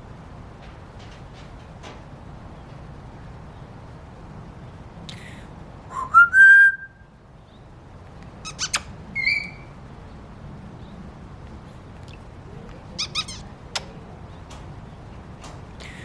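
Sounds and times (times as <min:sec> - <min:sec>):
parrot whistling: 0:05.9 - 0:07.0, 0:08.4 - 0:09.7, 0:13.0 - 0:13.4.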